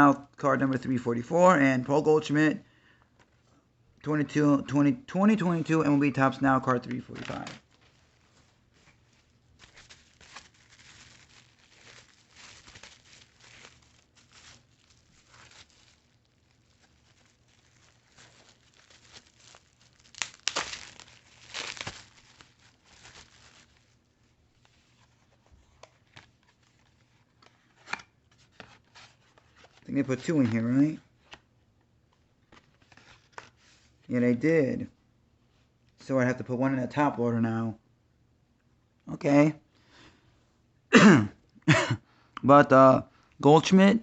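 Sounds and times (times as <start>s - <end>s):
card packaging rustling: 6.7s - 30.8s
packaging tearing: 9.2s - 24.0s.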